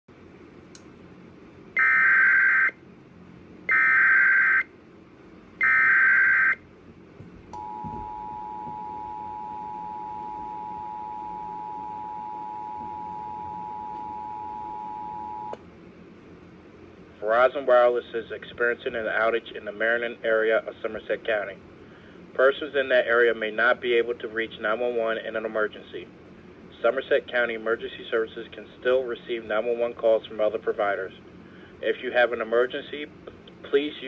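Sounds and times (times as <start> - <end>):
two-tone attention signal: 7.6 - 15.6.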